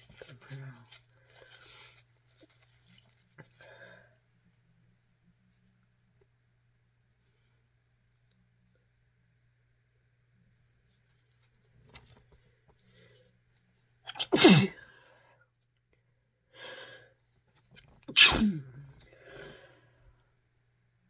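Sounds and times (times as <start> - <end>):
person breathing: 3.5 - 4.2, 14.8 - 15.4, 16.5 - 17.2, 19.0 - 20.2
person sneezing: 14.1 - 14.8, 18.1 - 19.4.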